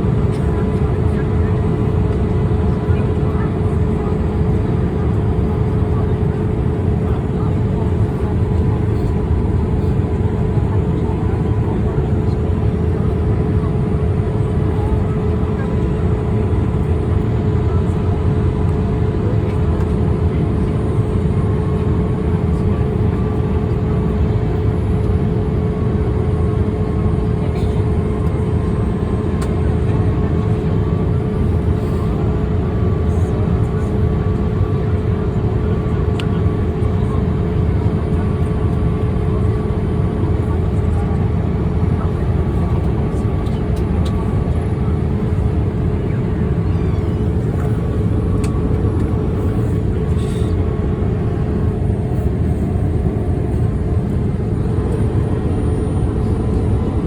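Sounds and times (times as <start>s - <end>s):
aircraft cabin engine rumble: 0.0s - 57.0s.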